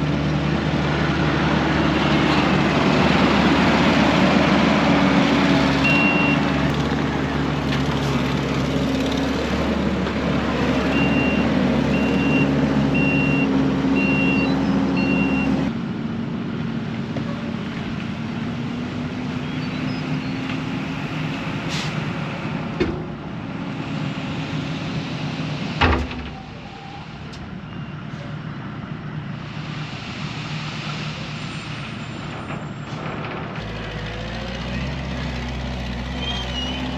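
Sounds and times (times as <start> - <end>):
diesel engine running: 0.0 - 26.1, 28.6 - 36.9
backup alarm beeping: 5.8 - 6.4, 12.0 - 15.6.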